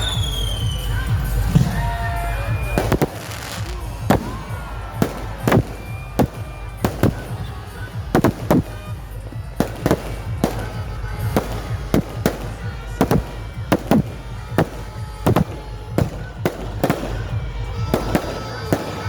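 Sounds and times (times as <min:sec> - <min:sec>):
fireworks bangs: 0:00.0 - 0:19.0.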